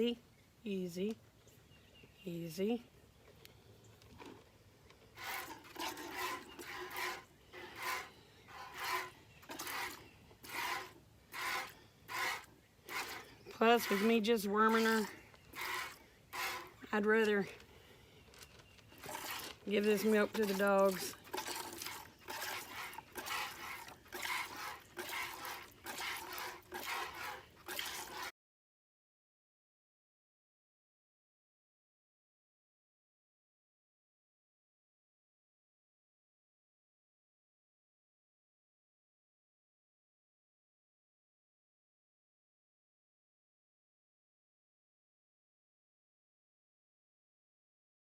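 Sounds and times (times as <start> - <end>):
milk squirting into pail: 5.2 - 16.8, 18.8 - 28.3.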